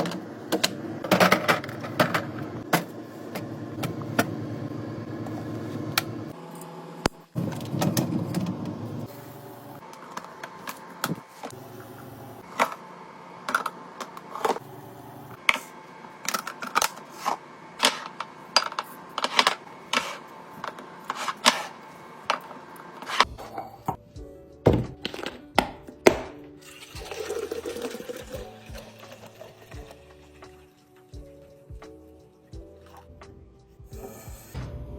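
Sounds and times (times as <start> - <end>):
background music: 23.2 - 34.9
containers clicking and knocking: 26.7 - 30.2.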